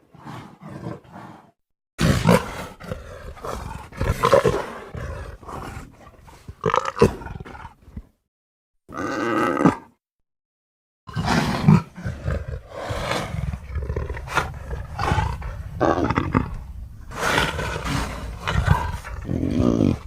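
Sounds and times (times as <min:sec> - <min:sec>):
creature roars and growls: 0:02.0 - 0:05.5, 0:11.1 - 0:20.0
steady low rumble: 0:13.6 - 0:19.4.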